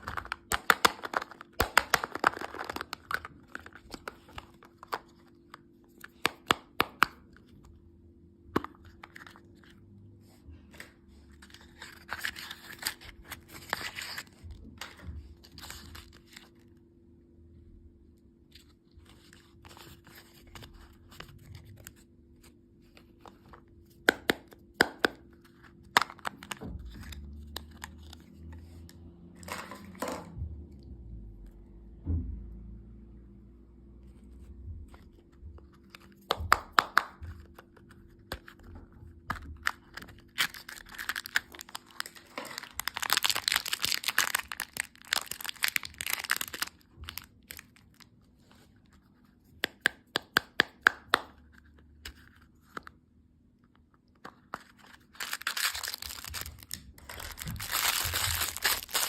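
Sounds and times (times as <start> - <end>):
plastic wrappers crinkling: 0.0 - 6.2, 39.5 - 48.1, 54.2 - 59.0
faint steady hum: 0.0 - 59.0.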